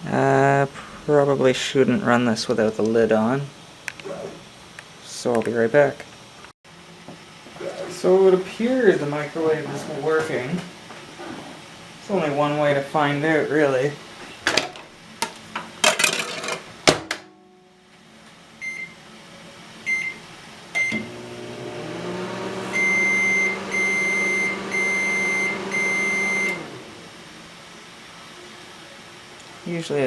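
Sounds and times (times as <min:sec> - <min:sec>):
microwave oven humming: 0:18.6 - 0:28.0
long beeps: 0:22.7 - 0:26.7.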